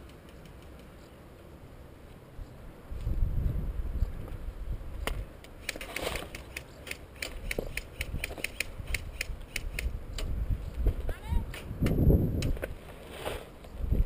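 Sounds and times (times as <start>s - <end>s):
airsoft rifle mechanism clicking: 5.4s - 10.3s.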